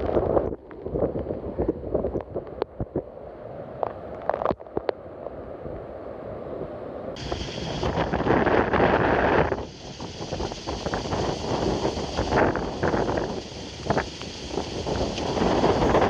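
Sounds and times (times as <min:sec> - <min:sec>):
wind buffeting microphone: 0:07.2 - 0:16.0.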